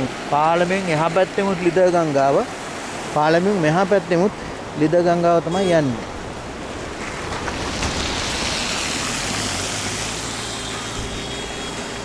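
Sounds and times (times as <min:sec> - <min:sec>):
river water rushing: 0:00.0 - 0:12.0
motor vehicle passing: 0:06.4 - 0:12.0.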